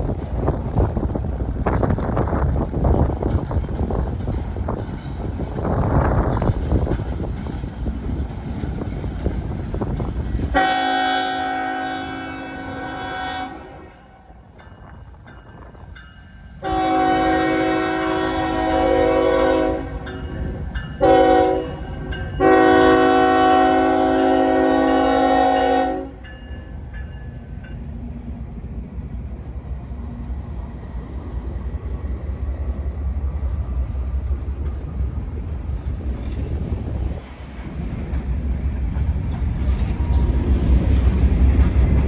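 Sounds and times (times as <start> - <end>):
train passing rumble: 0.0 - 42.0
locomotive air horn: 10.5 - 14.0, 16.6 - 20.1, 21.0 - 26.2.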